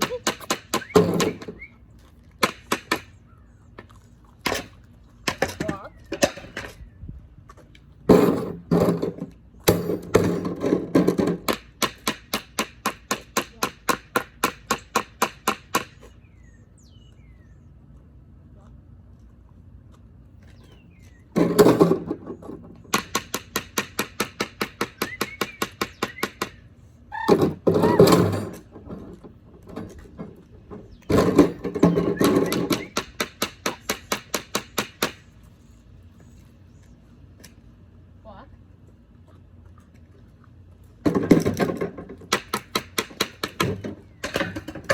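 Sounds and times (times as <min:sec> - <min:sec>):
hard objects banging: 0:00.0 - 0:01.6, 0:04.4 - 0:06.9, 0:08.0 - 0:16.0, 0:21.3 - 0:35.2, 0:41.0 - 0:44.9.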